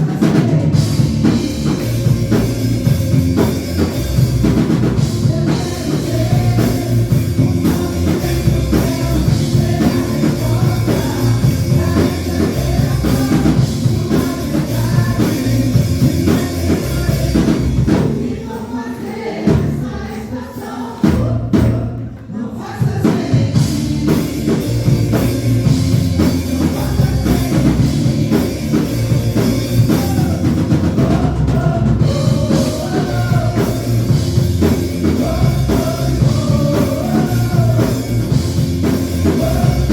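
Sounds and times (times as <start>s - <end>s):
drum kit playing: 0.0s - 39.9s
gospel rock song singing: 0.0s - 39.9s.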